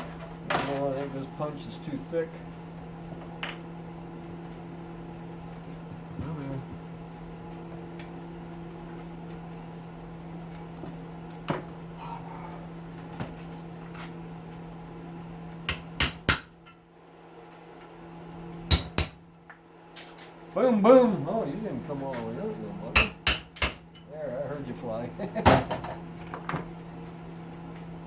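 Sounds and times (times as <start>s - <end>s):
steady low hum: 0.0s - 28.0s
hammer striking metal punch: 15.7s - 16.8s, 18.7s - 19.2s, 22.9s - 24.0s.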